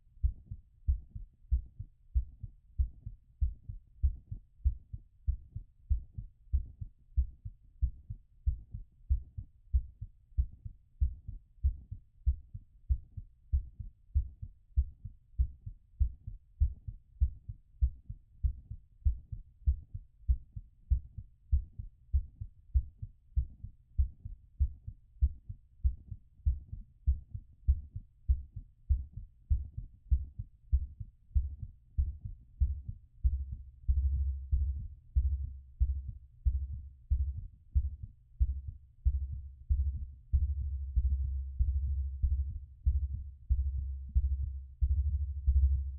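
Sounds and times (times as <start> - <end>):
heartbeat through stethoscope: 0.2 - 45.9
low rumble: 31.4 - 45.9.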